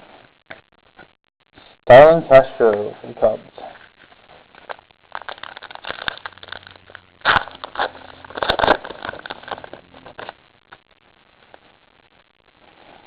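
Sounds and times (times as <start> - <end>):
cards clicking and rustling: 4.6 - 10.4.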